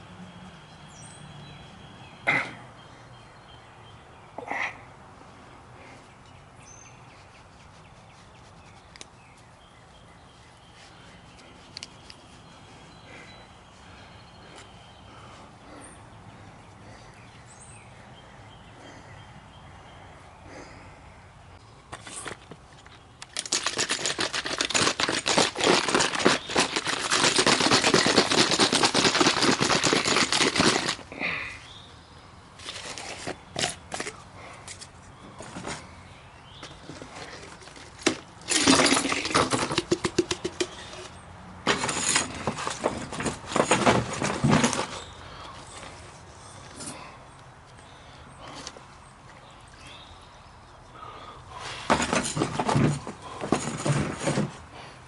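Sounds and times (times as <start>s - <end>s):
rapid rattling clatter: 23.3s - 31.0s, 38.0s - 40.9s.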